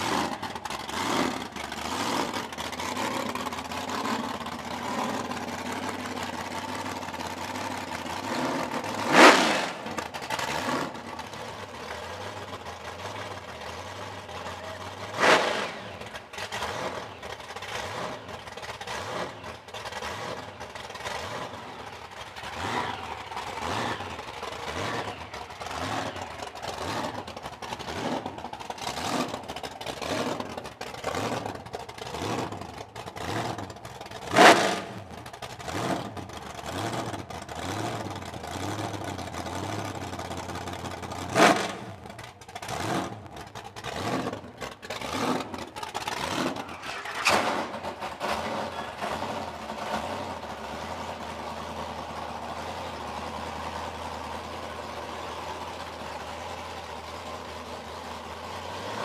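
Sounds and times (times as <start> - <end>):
car engine revving and idling: 0.0 - 59.0.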